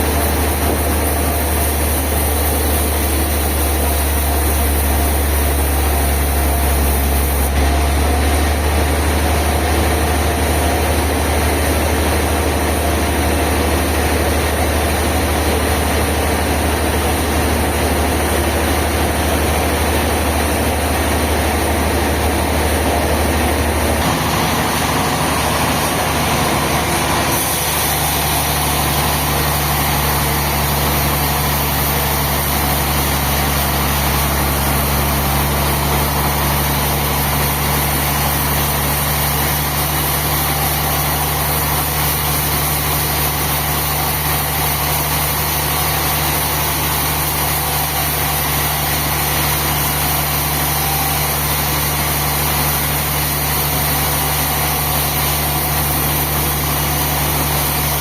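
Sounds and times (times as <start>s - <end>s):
sawmill engine humming: 0.0s - 58.0s.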